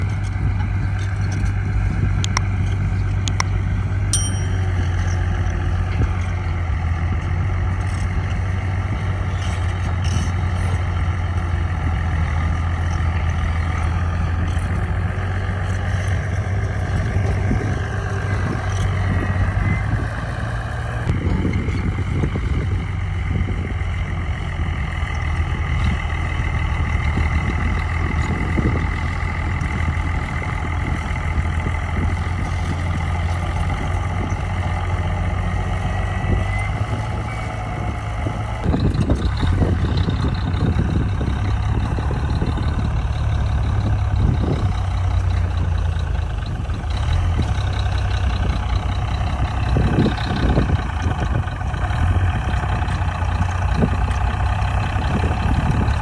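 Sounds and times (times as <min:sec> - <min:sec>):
diesel machinery engine drone: 0:00.0 - 0:56.0
sharp metallic clinks: 0:04.1 - 0:05.5.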